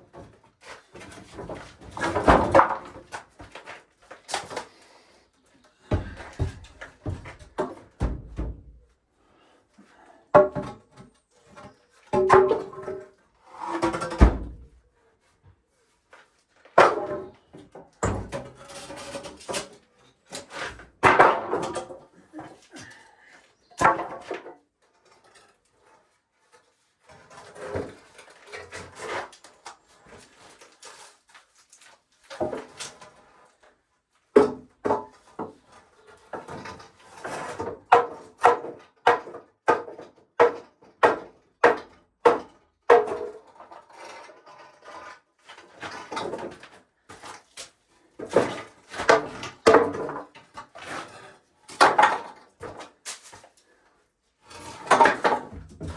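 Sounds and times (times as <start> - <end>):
wooden pieces knocking and clattering: 0.9 - 4.7, 51.7 - 53.4.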